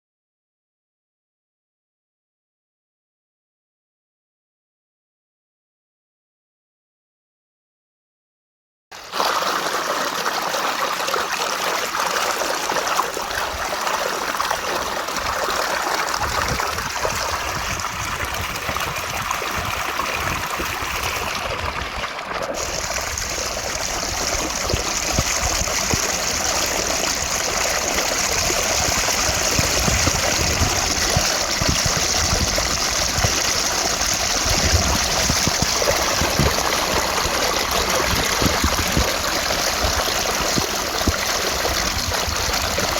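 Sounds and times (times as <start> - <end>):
stream water cascading: 9.0 - 42.9.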